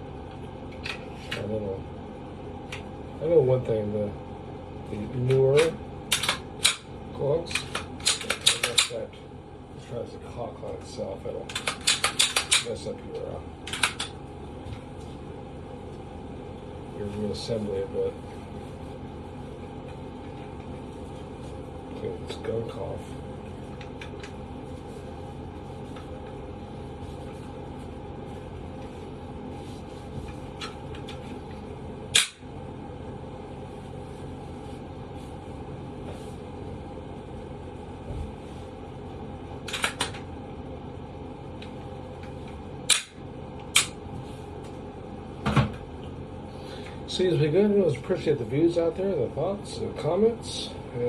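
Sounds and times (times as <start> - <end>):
steady background hum: 0.0 - 51.0
pistol parts clicking and knocking: 6.1 - 6.8, 11.5 - 12.7.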